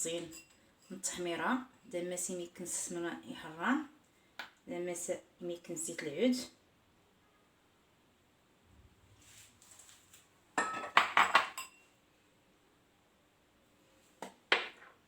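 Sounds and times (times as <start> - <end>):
soft rustle: 8.8 - 10.4
utensils and dishes clinking: 10.6 - 11.9.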